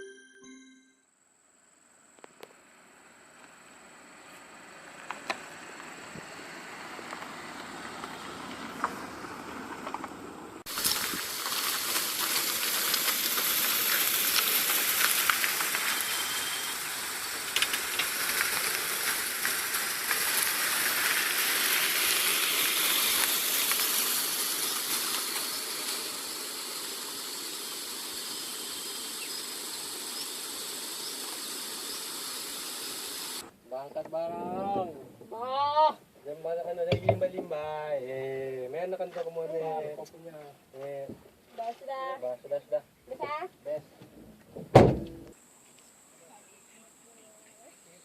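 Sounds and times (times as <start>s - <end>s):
steady wideband hiss: 10.6s - 48.0s.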